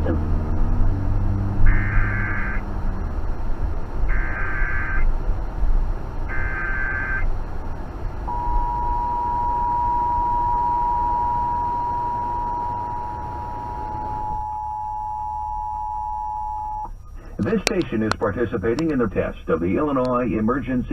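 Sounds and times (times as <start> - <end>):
two-tone alert signal: 8.3 - 16.9.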